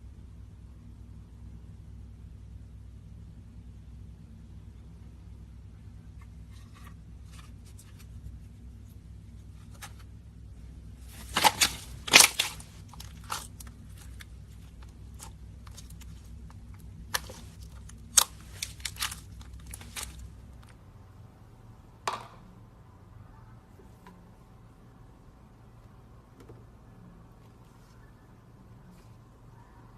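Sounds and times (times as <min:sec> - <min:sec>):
faint low hum: 0:00.0 - 0:29.9
slime crackling and popping: 0:11.1 - 0:20.7.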